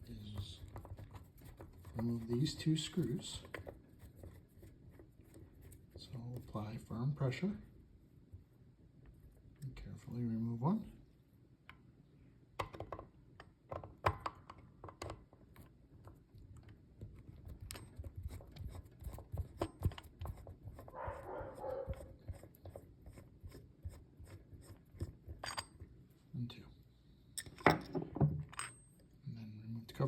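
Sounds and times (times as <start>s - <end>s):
clicks and taps of metal parts: 12.6s - 15.4s.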